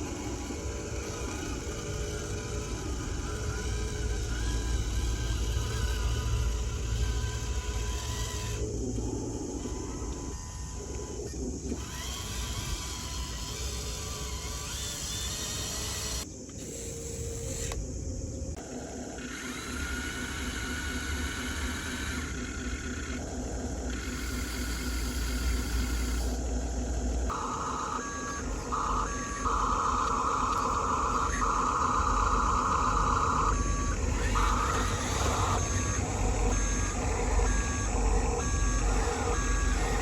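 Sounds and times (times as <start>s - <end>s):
small electric motors whirring: 0.0s - 40.0s
reversing alarm beeps: 27.3s - 40.0s.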